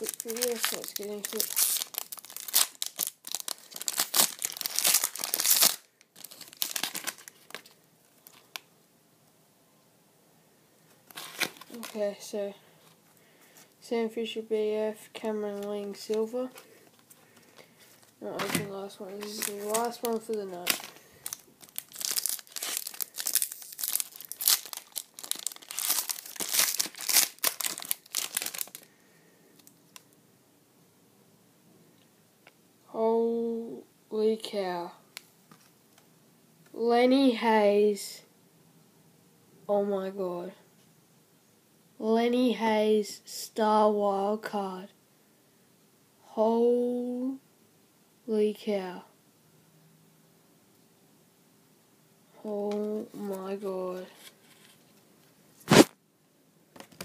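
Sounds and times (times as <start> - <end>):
wrapper tearing and crinkling: 0.0 - 8.6, 11.1 - 12.0, 19.2 - 28.9, 55.7 - 55.9.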